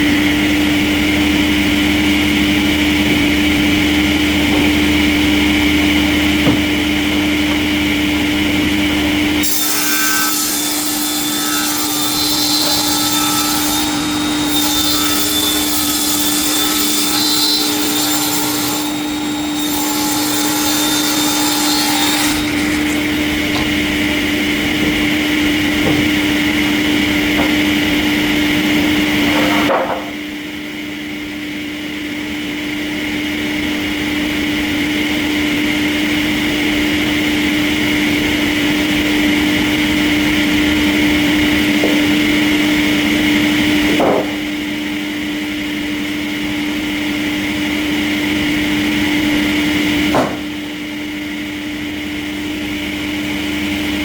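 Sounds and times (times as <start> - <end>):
steady machine hum: 0.0 - 9.5, 17.6 - 54.0
sawmill saw cutting logs: 0.0 - 30.1.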